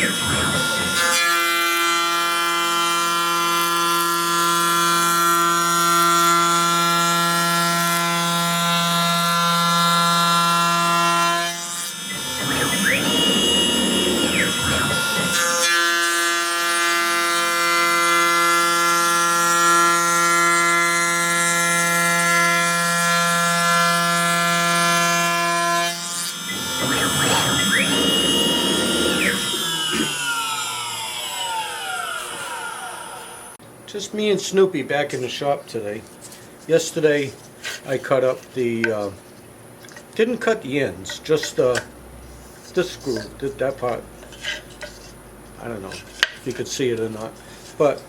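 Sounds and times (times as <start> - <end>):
router spindle whining: 0.0 - 33.6.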